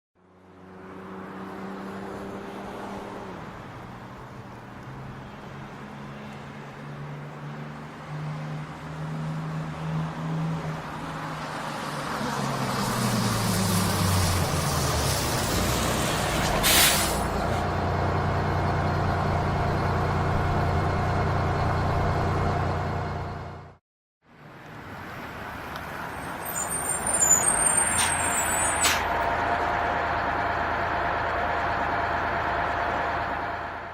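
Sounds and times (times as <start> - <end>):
bus engine running: 0.2 - 23.8, 25.0 - 33.9
air brakes hissing: 14.2 - 17.7, 26.3 - 29.3.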